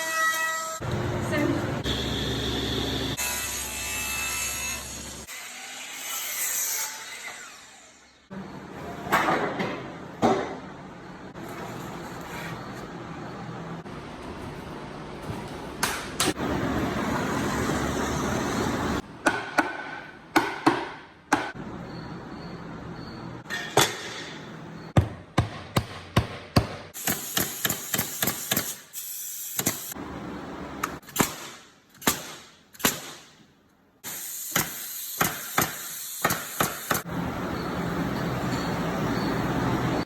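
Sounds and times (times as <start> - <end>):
hammer striking wood: 19.2 - 21.6, 25.0 - 28.6, 35.2 - 37.0
steady background noise: 35.2 - 40.0.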